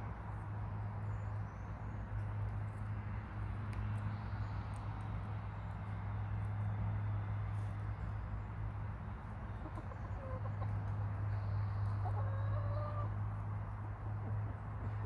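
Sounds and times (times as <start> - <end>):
hens clucking: 9.5 - 13.2.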